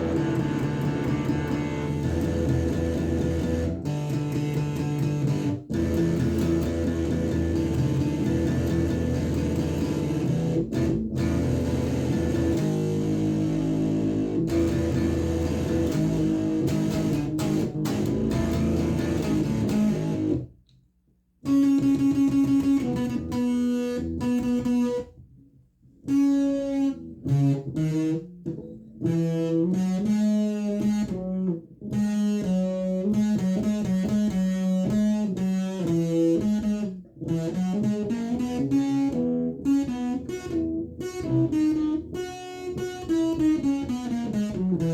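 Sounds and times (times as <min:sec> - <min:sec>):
fuzz electric guitar: 0:00.0 - 0:20.5, 0:21.5 - 0:25.0.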